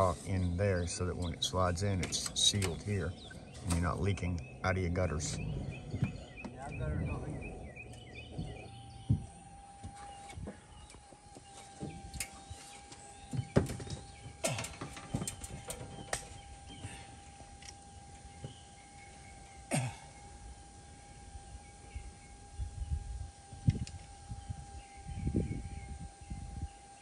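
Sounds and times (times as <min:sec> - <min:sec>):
metal gutter sections clicking: 0:00.0 - 0:06.8
faint steady hum: 0:00.0 - 0:27.0.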